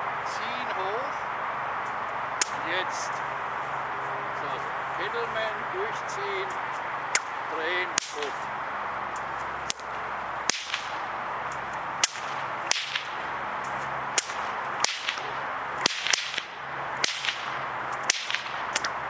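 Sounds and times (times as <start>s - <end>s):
bullwhip cracking: 1.8s - 3.3s, 6.3s - 19.0s.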